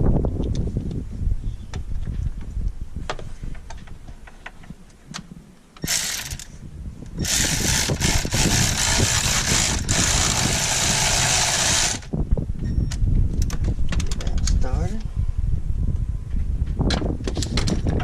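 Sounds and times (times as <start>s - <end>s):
handheld power tool running: 5.9s - 6.5s, 7.2s - 12.1s.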